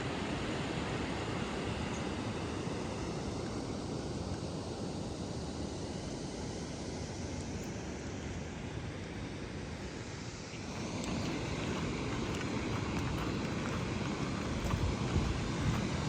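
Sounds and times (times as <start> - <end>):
waterfall roaring: 10.0 - 16.0.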